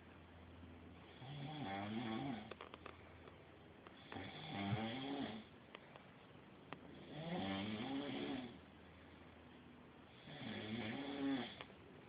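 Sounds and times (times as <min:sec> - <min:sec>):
person snoring: 0:01.0 - 0:02.5, 0:04.0 - 0:05.5, 0:07.0 - 0:08.6, 0:10.1 - 0:11.7.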